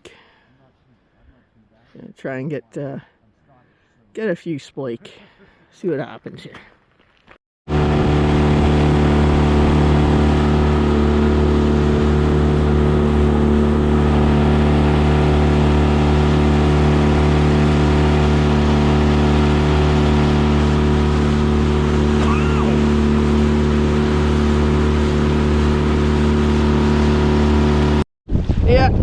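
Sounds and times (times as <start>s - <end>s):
boat motor running: 7.7s - 28.0s.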